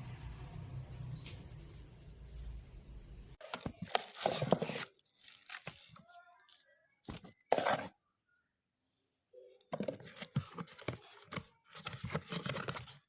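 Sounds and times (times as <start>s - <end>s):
packaging rustling and tearing: 3.4s - 7.9s.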